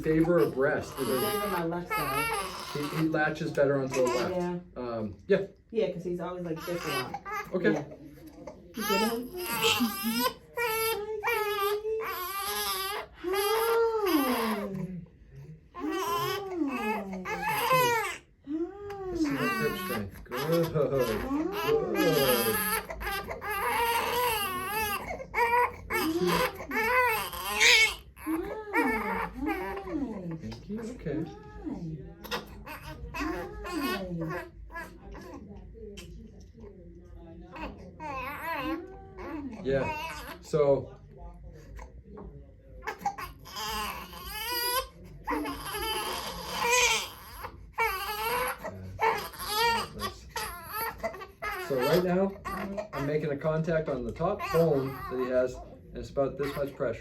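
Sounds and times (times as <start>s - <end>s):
baby crying: 0.0s - 4.5s, 6.4s - 14.9s, 15.8s - 31.6s, 32.2s - 35.5s, 37.6s - 40.4s, 42.8s - 53.2s, 54.3s - 55.4s.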